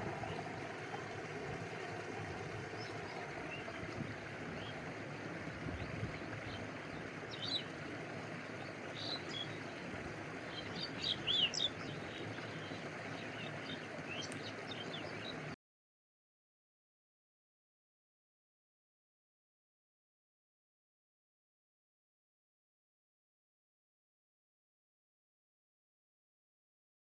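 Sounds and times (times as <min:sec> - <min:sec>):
small birds chirping: 0:00.0 - 0:04.0, 0:10.4 - 0:15.4
stream rushing and lapping: 0:00.0 - 0:15.6.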